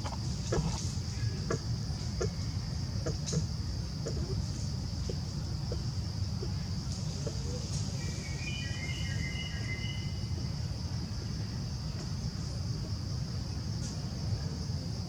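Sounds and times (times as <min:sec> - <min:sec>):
insects droning: 0:00.0 - 0:15.0.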